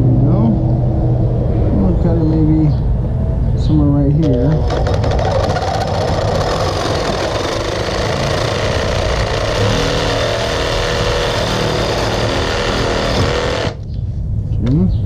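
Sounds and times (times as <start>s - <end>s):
reciprocating saw cutting pipe: 4.3s - 13.8s.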